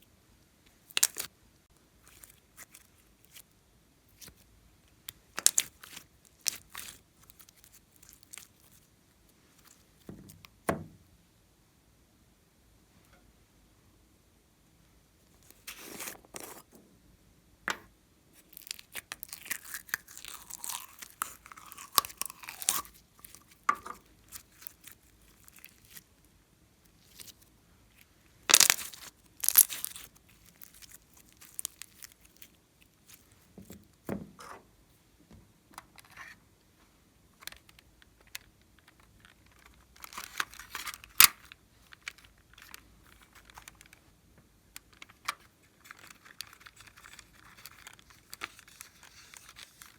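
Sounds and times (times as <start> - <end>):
slime crackling and popping: 0.9 - 1.3, 5.3 - 8.7, 18.4 - 23.6, 28.4 - 33.3.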